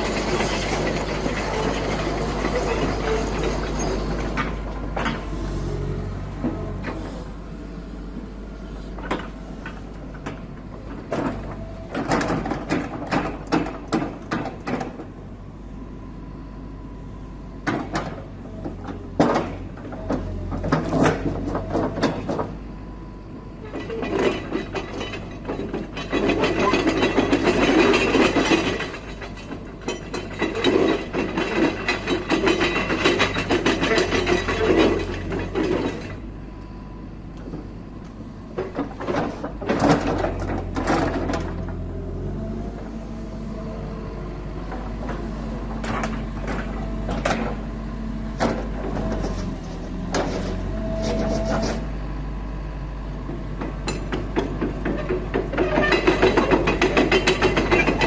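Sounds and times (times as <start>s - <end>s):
metallic clanks and creaks: 0.0s - 5.5s, 23.6s - 36.2s, 44.6s - 47.6s, 48.4s - 51.9s, 53.3s - 58.0s
diesel engine humming: 0.0s - 58.0s.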